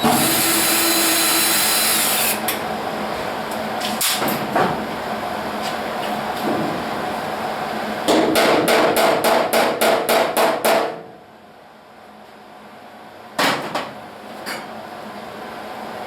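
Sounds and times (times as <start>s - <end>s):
hammer striking sheet metal: 8.1s - 11.0s.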